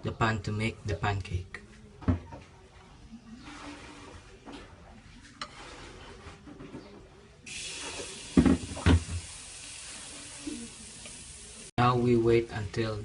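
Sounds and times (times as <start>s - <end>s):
batter sizzling in pan: 7.5s - 11.8s.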